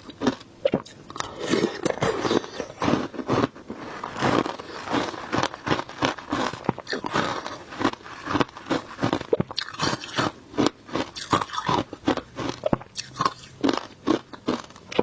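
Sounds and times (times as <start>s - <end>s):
crunching shaved ice: 0.0s - 15.0s.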